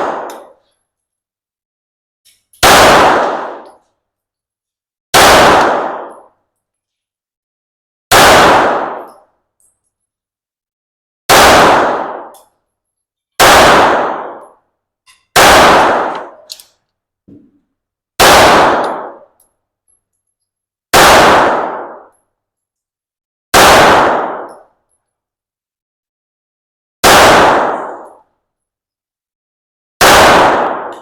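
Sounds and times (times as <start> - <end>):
handgun shots with ringing tail: 0.0 - 0.7, 2.6 - 3.9, 5.2 - 6.4, 8.1 - 9.3, 11.3 - 12.5, 13.4 - 16.6, 18.2 - 19.4, 20.9 - 22.2, 23.5 - 24.7, 27.0 - 28.2, 30.0 - 31.0.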